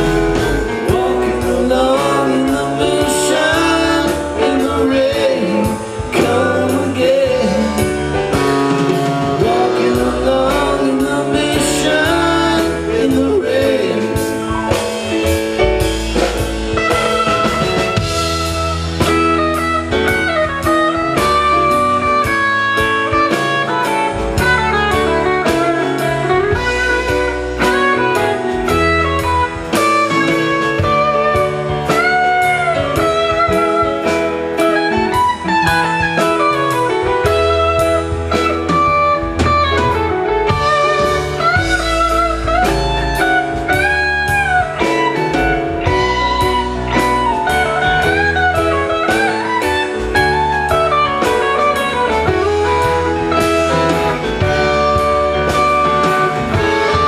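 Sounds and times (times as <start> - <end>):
bass guitar: 0.0 - 57.0
drum kit: 0.0 - 57.0
electric guitar bending notes: 0.0 - 57.0.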